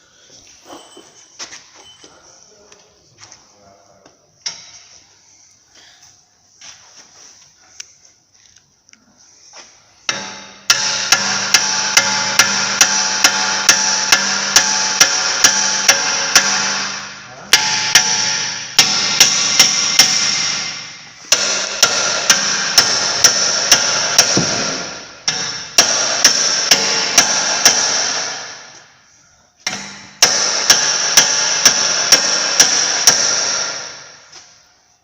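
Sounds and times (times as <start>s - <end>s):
impact wrench hammering: 4.4s - 5.0s, 10.0s - 29.0s, 29.6s - 34.7s.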